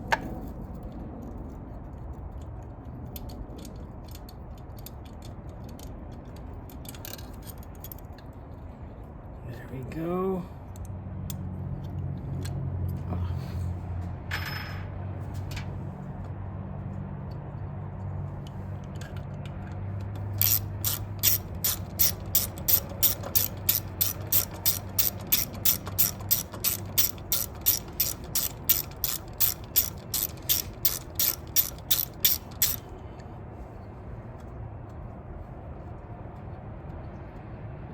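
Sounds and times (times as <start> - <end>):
ratchet wrench clicking: 18.8 - 33.0.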